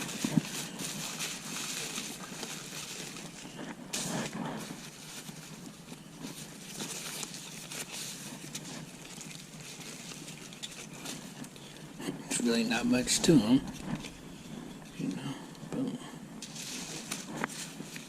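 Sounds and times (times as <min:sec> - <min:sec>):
packaging rustling and crinkling: 0:00.0 - 0:18.0.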